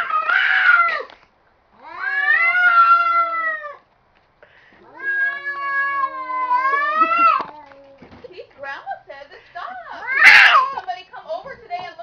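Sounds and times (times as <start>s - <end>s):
cats yowling: 0.0s - 1.1s, 1.8s - 3.8s, 4.8s - 8.1s, 9.8s - 10.8s.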